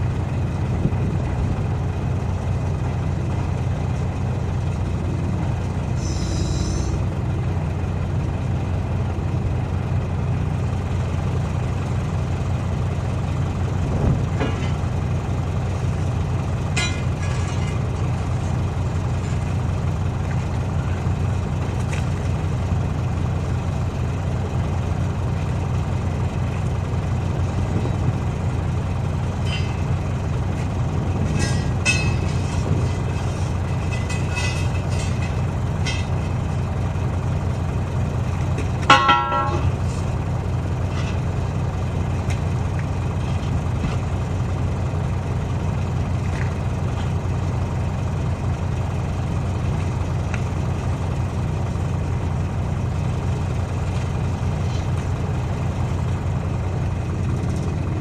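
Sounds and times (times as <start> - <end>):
heavy engine idling: 0.0 - 58.0
short loud tone: 6.0 - 7.0.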